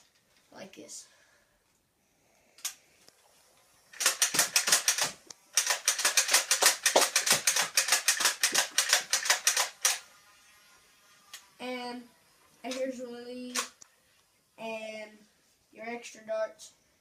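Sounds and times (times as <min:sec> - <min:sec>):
toy blaster clicking rapidly: 0:03.9 - 0:10.1, 0:11.2 - 0:11.6, 0:12.6 - 0:13.8.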